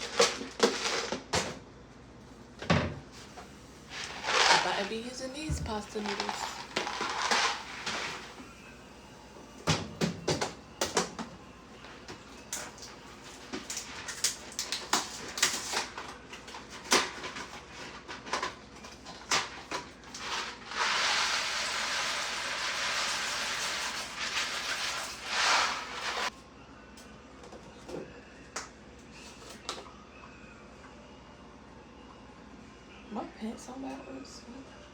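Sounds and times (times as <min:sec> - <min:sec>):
packaging and cookware clatter: 0:03.9 - 0:08.4, 0:12.6 - 0:26.3.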